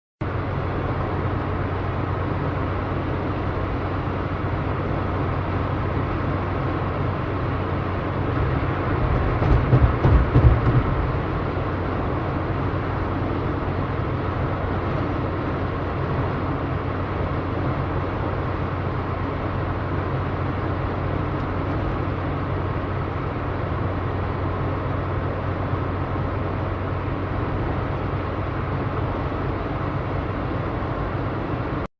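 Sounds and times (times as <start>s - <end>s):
car engine and road noise: 0.2s - 31.9s
loud low rumble: 7.0s - 14.0s.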